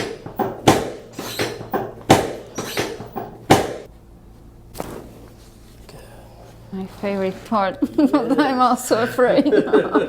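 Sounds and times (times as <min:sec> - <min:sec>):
sharp ringing knocks: 0:00.0 - 0:03.9.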